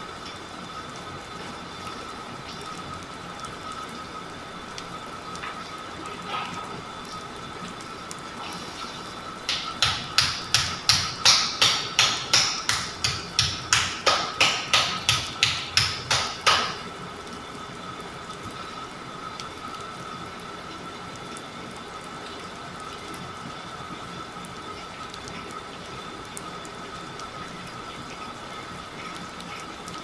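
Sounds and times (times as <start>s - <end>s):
hands slapping body rhythmically: 9.5s - 16.8s.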